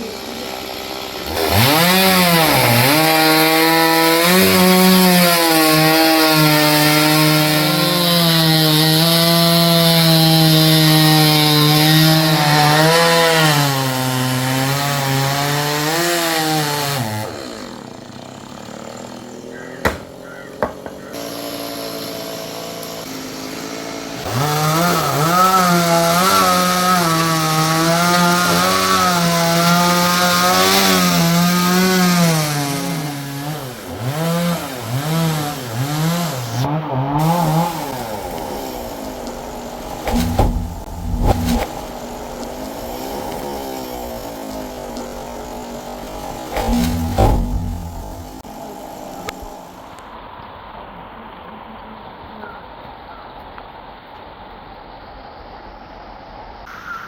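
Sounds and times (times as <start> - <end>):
chainsaw cutting log: 0.0 - 49.8
sharp knocks: 19.8 - 21.1, 38.5 - 48.4.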